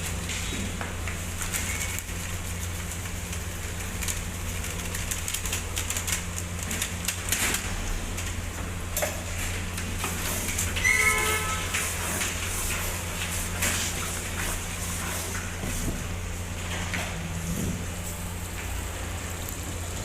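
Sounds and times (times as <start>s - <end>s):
clicks and scrapes on griddle: 9.3s - 15.9s
steady low hum: 11.7s - 20.0s.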